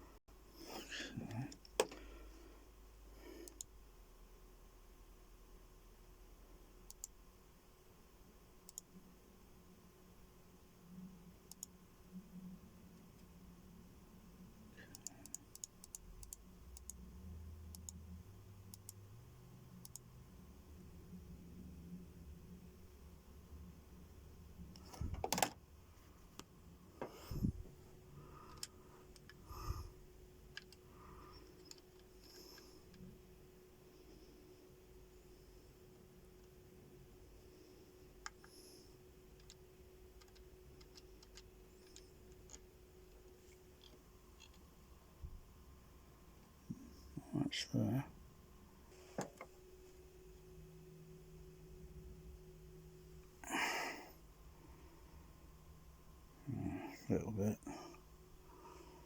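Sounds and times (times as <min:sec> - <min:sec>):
low test tone hum: 0:00.0 - 0:38.9
sharp clicks: 0:03.4 - 0:03.7, 0:06.9 - 0:07.2, 0:08.7 - 0:08.9, 0:11.5 - 0:11.7, 0:14.8 - 0:17.0, 0:17.7 - 0:18.0, 0:18.7 - 0:19.0, 0:19.8 - 0:20.0.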